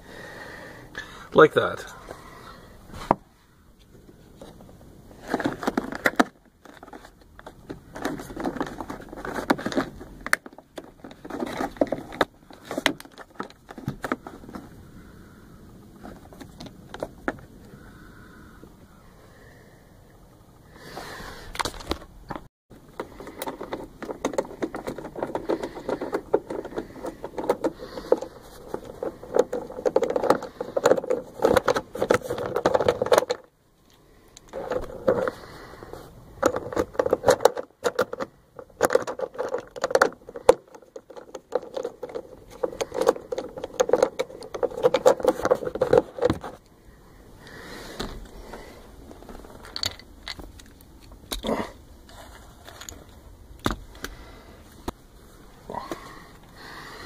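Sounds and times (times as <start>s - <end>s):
clattering and rattling of parts: 4.0s - 14.8s, 21.5s - 46.7s, 47.5s - 55.0s.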